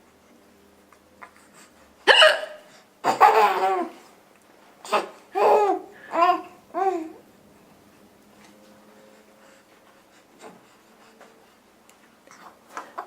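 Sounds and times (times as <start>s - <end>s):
woman hiccuping: 2.1s - 3.9s
baby laughing: 2.4s - 4.0s, 4.8s - 7.2s.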